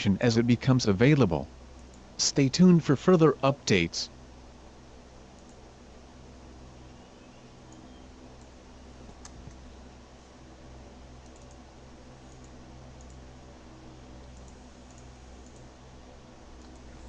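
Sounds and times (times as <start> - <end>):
steady low hum: 0.0 - 17.0
keyboard and mouse clicks: 8.4 - 9.6, 11.2 - 11.6, 14.3 - 15.7.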